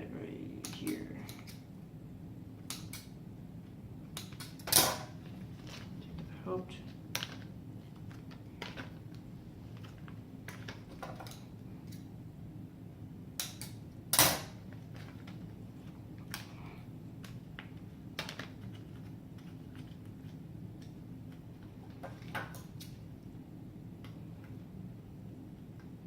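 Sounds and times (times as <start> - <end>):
steady low hum: 0.0 - 26.0
objects and packaging clicking: 17.2 - 23.0.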